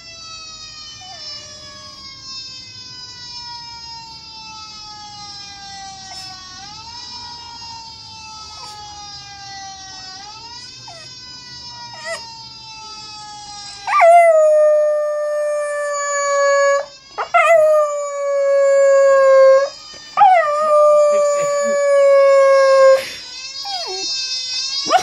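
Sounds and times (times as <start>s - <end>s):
fire truck siren wailing: 0.0s - 25.0s
dog howling: 8.5s - 11.1s, 11.9s - 12.3s, 13.8s - 24.1s.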